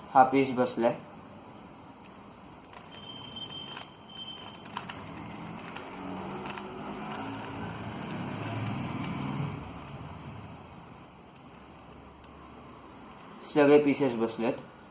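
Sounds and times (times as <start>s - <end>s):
background noise: 0.0s - 14.9s
puzzle cube plastic clicks: 2.6s - 10.4s.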